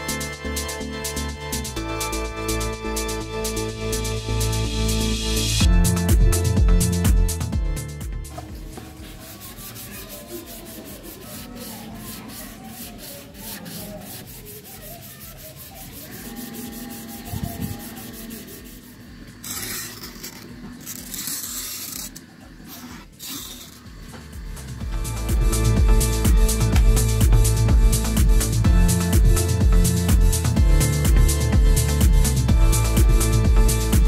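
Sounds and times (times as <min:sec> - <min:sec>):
sanding plastic sheet: 0:08.3 - 0:27.7.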